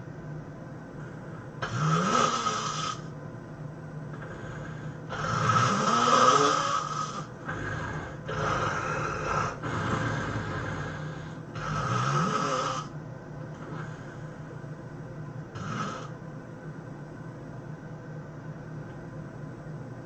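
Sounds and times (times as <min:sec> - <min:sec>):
person snoring: 0:01.6 - 0:03.1, 0:04.1 - 0:12.9, 0:13.6 - 0:14.3, 0:15.6 - 0:16.1.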